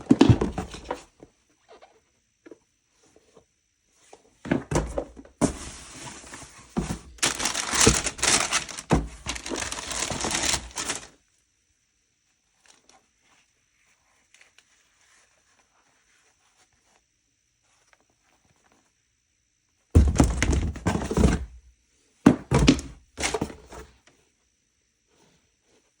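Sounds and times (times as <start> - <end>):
packaging crinkling and rustling: 5.4 - 11.2
thuds and knocks: 6.8 - 11.0, 20.0 - 21.6, 22.3 - 23.9.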